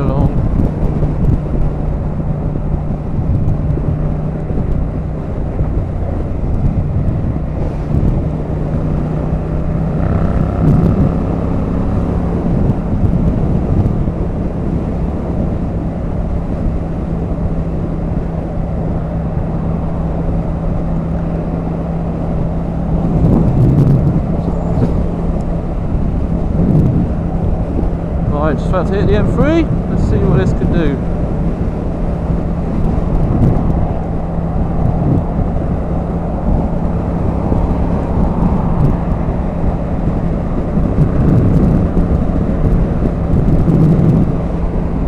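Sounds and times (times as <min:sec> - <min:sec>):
motorcycle engine running: 0:00.0 - 0:45.0
wind buffeting microphone: 0:00.0 - 0:45.0.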